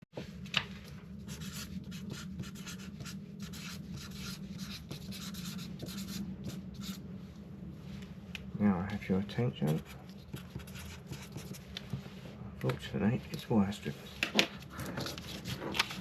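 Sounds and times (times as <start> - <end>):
low hum: 0.2 - 10.4.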